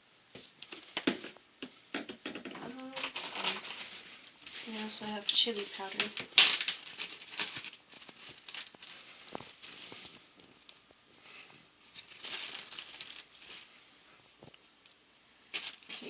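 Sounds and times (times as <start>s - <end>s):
container crinkling and rustling: 2.6s - 13.7s, 15.5s - 16.0s.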